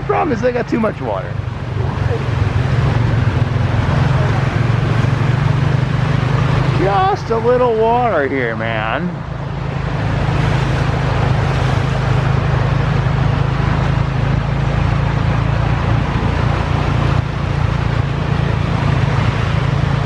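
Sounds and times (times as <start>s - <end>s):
rushing water: 0.0s - 20.0s
vehicle engine drone: 0.0s - 20.0s.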